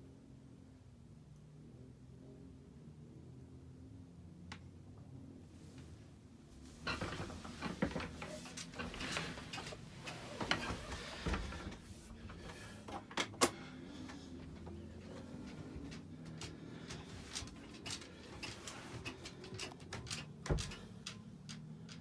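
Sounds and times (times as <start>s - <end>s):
knocks and rustling of handling: 5.6s - 22.0s.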